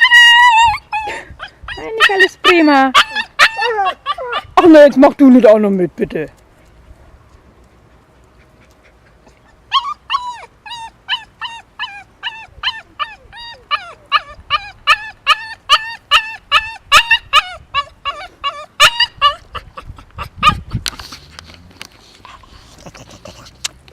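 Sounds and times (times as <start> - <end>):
dog whining with high yips: 0.0 - 4.6, 9.7 - 21.0.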